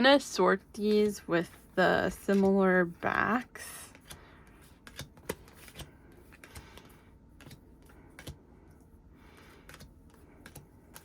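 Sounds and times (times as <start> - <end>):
cards clicking and tapping: 3.7 - 11.0.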